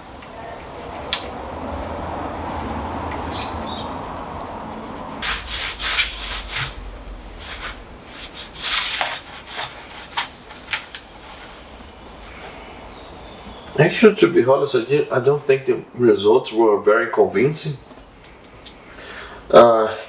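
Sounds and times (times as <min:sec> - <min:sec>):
steady low background noise: 0:00.0 - 0:20.0
wax crayon rubbing on wood: 0:03.0 - 0:10.4.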